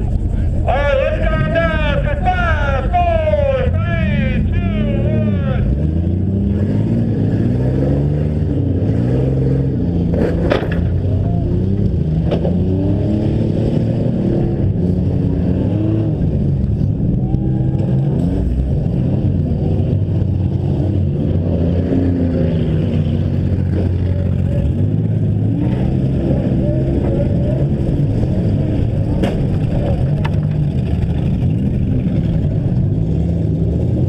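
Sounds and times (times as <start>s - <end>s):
car engines revving: 0.0s - 34.0s.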